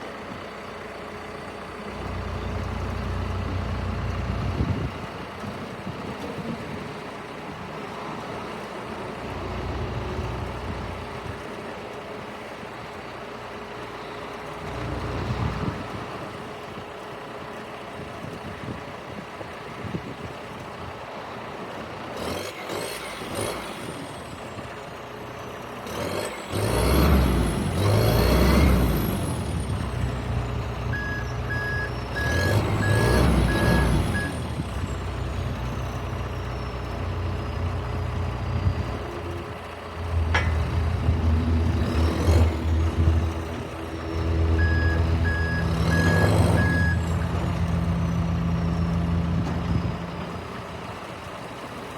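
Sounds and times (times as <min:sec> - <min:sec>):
diesel engine revving: 0:00.0 - 0:17.8, 0:21.4 - 0:51.9
reverse alarm beeps: 0:30.9 - 0:34.5, 0:44.1 - 0:47.4.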